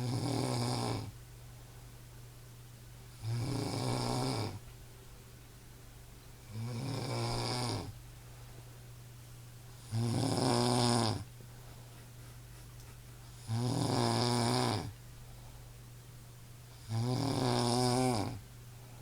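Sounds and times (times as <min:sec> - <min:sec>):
person snoring heavily: 0:00.0 - 0:01.1, 0:03.2 - 0:04.6, 0:06.5 - 0:07.9, 0:09.8 - 0:11.3, 0:13.4 - 0:14.9, 0:16.8 - 0:18.4
steady low hum: 0:00.0 - 0:19.0
quiet breathing: 0:06.4 - 0:08.9, 0:11.0 - 0:16.0, 0:17.9 - 0:19.0.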